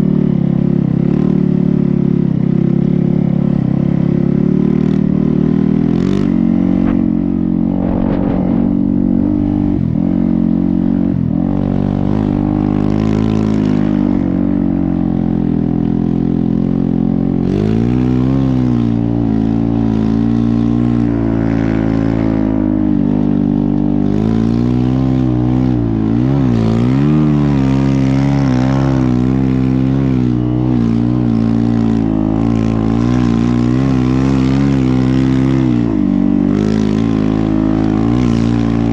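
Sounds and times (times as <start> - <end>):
snow bike engine revving: 0.0 - 38.9.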